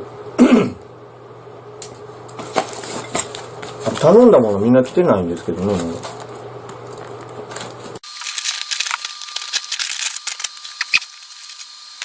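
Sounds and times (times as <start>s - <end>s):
packaging crinkling: 5.7s - 12.0s.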